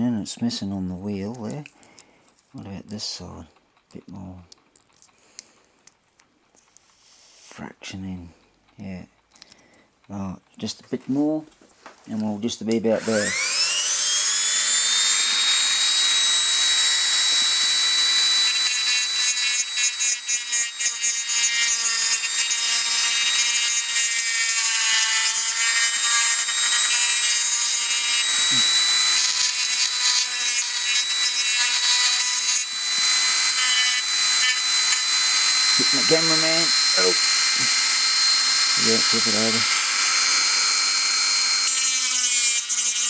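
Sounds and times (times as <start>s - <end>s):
rotary tool grinding plastic: 13.0s - 43.0s.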